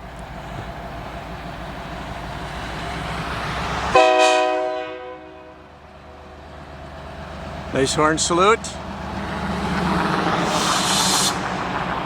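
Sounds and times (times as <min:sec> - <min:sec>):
diesel locomotive rumble: 0:00.0 - 0:12.0
locomotive air horn blast: 0:03.9 - 0:06.3.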